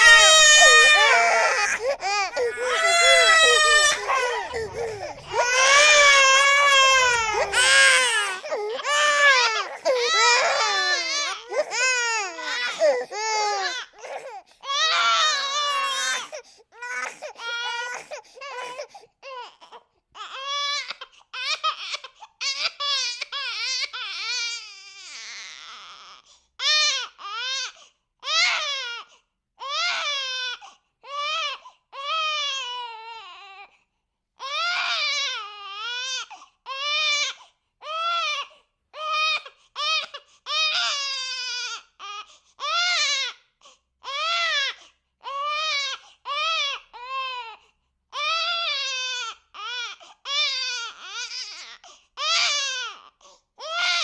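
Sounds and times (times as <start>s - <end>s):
cartoon baby crying: 0.0s - 13.8s.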